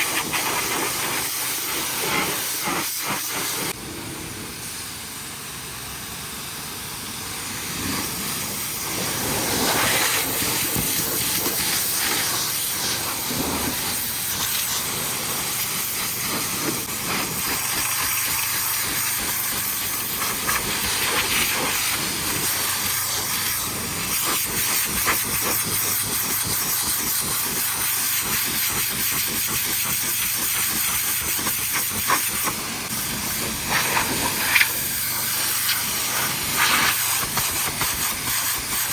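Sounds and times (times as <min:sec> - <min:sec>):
pressure washer spraying water: 0:00.0 - 0:38.9.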